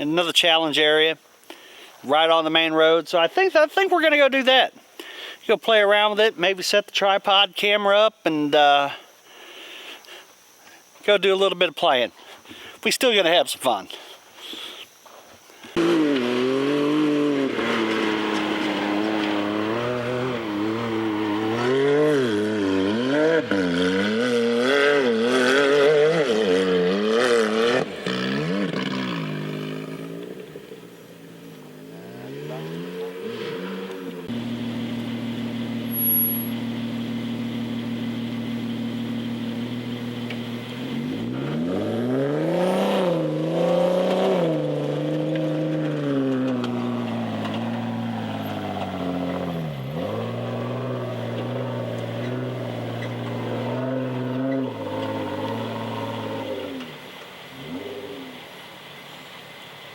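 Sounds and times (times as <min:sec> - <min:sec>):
off-road vehicle engine revving: 0:15.7 - 0:58.6.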